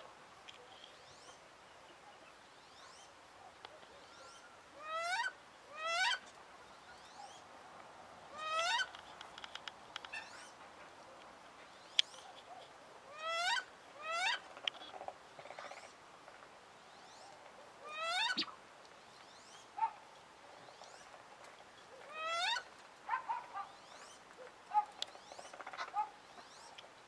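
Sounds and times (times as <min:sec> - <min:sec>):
duck squealing calls: 0:04.8 - 0:06.2, 0:08.4 - 0:08.9, 0:13.1 - 0:14.4, 0:17.9 - 0:18.5, 0:22.2 - 0:22.7.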